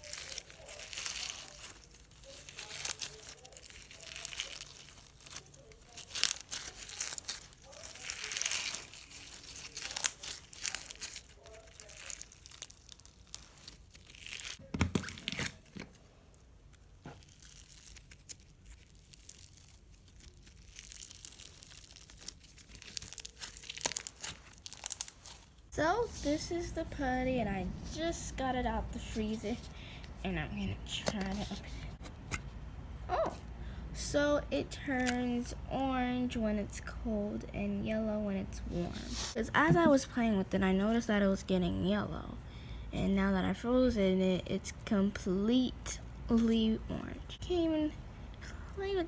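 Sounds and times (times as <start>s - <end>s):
slime crackling and popping: 0.0s - 27.4s, 34.8s - 35.4s.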